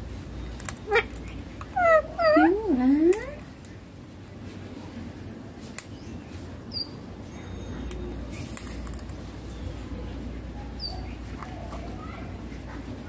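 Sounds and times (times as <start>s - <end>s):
parrot high chirp: 0.8s - 3.3s
parrot wavering call: 1.7s - 2.8s.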